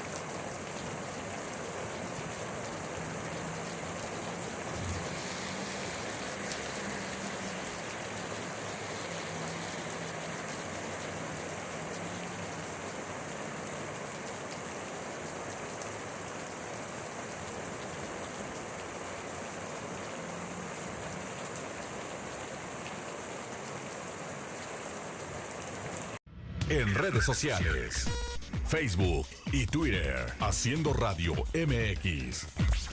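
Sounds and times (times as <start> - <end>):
steady rain falling: 0.0 - 26.2.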